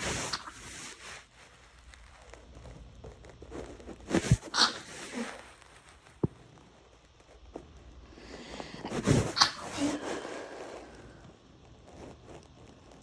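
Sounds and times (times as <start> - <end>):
bed sheets rustling: 2.2 - 6.1, 7.3 - 11.2
wet stifled sneeze: 4.2 - 5.4, 8.6 - 10.6.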